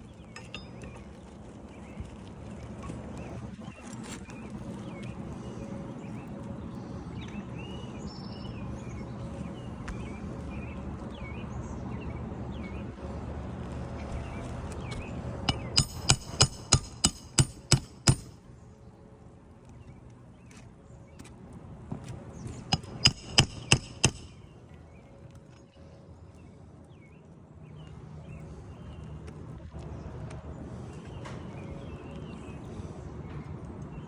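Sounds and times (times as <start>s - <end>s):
hammer striking metal tool: 0.4s - 0.8s, 15.5s - 18.4s, 22.7s - 24.4s.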